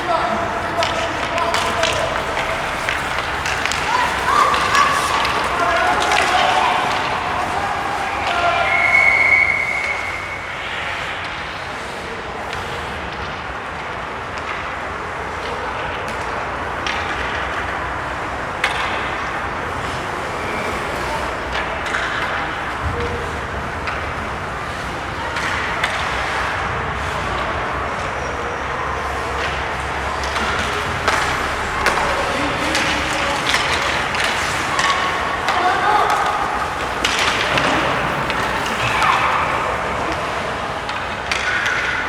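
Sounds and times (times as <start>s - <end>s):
crowd noise: 0.0s - 42.0s
hockey sticks and puck clacking: 0.0s - 42.0s
skates scraping ice: 0.0s - 42.0s
whistle blast: 8.3s - 10.6s.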